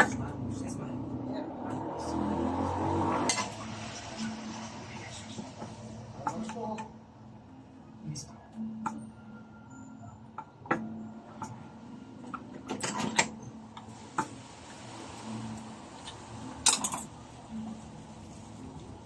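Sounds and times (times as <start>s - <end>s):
parts and tools clicking and clinking: 12.3s - 14.3s, 16.0s - 17.2s.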